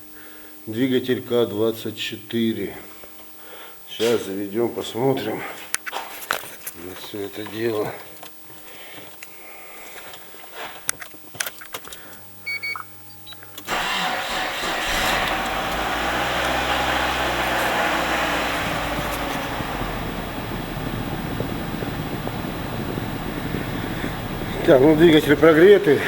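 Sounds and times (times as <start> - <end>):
short electronic beeps: 12.4 - 13.5
car engine starting and idling: 13.6 - 26.0.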